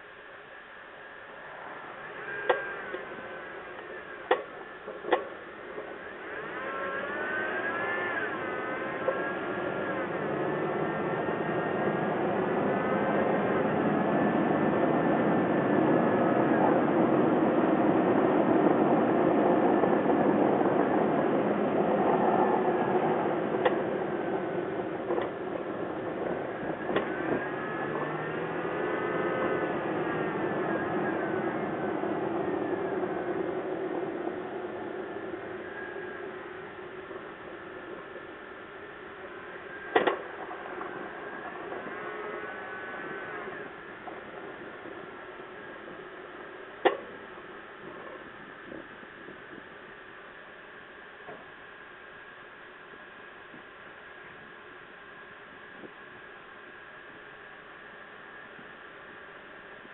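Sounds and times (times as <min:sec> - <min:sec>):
vehicle noise: 0:01.3 - 0:47.2.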